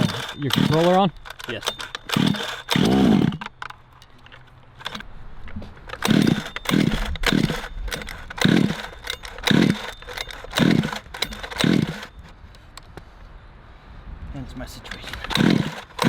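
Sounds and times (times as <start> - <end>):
small engine being pull-started: 0.0 - 5.0, 5.9 - 12.2, 14.9 - 16.0.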